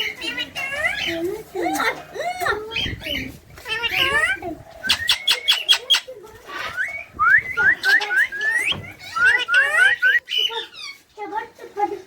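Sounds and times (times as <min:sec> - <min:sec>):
parrot whistled chirps: 0:06.7 - 0:10.2.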